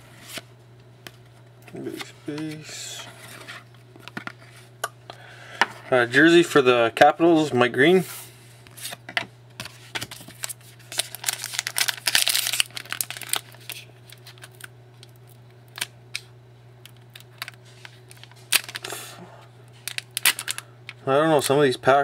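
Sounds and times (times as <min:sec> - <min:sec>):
steady low hum: 0:00.0 - 0:22.0
wrapper crinkling and tearing: 0:10.0 - 0:15.9, 0:16.9 - 0:19.1, 0:19.8 - 0:20.7.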